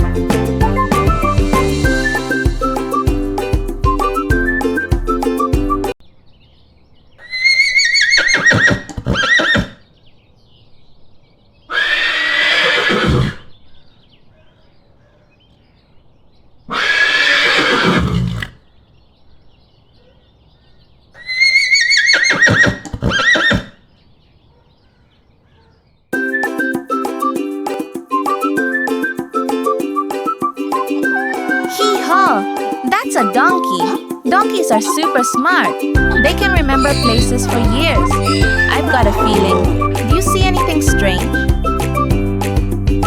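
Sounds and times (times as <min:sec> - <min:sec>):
horse neighing: 0:07.2 - 0:09.8, 0:11.7 - 0:13.5, 0:16.7 - 0:18.6, 0:21.2 - 0:23.8, 0:36.7 - 0:39.9.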